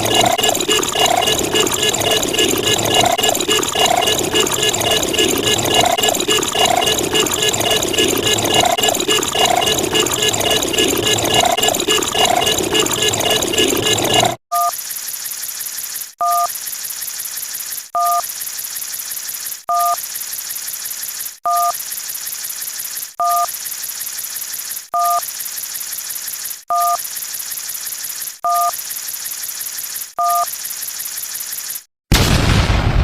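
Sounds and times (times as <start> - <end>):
telephone touch-tone beep: 14.5 - 14.8, 16.2 - 16.5, 18.0 - 18.2, 19.7 - 20.0, 21.5 - 21.8, 23.2 - 23.5, 25.0 - 25.2, 26.7 - 27.0, 28.5 - 28.8, 30.2 - 30.5.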